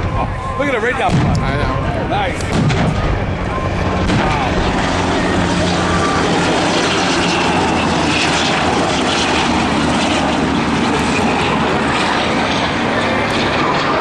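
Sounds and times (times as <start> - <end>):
aircraft engines roaring: 0.0 - 14.0.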